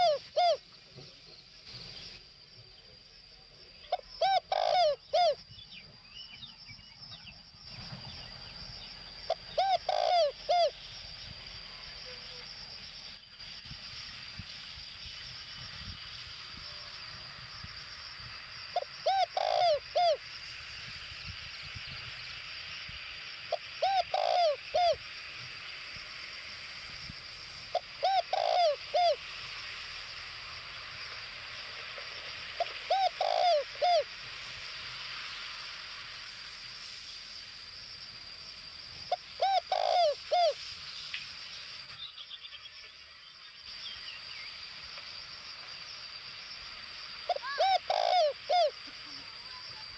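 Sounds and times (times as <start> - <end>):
dove cooing: 0.0 - 0.7, 3.9 - 5.4, 9.3 - 10.8, 18.8 - 20.2, 23.5 - 25.0, 27.7 - 29.2, 32.6 - 34.1, 39.1 - 40.6, 47.3 - 49.2
steady high hiss: 0.0 - 49.9.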